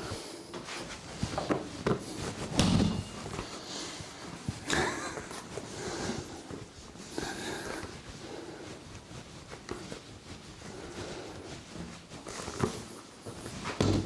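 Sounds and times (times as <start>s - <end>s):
rustling: 0.0s - 14.0s
heavy thump on table: 2.6s - 3.2s.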